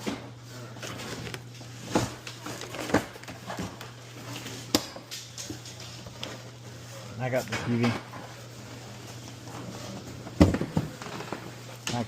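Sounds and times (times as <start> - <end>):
box handling noise: 0.0 - 4.8
steady low hum: 0.0 - 12.0.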